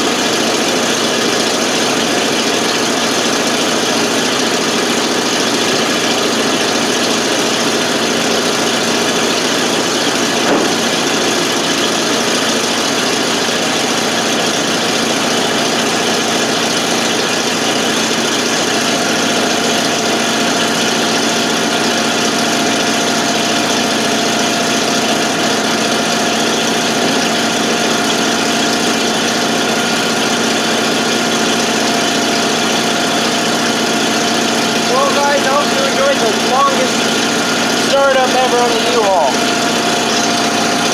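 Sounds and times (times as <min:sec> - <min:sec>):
truck engine idling: 0:00.0 - 0:40.9
steady high whine: 0:34.8 - 0:40.9.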